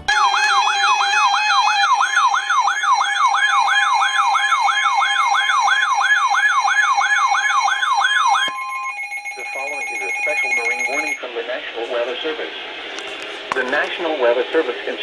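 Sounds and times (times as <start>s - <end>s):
electronic siren alert tone: 0.0s - 11.2s.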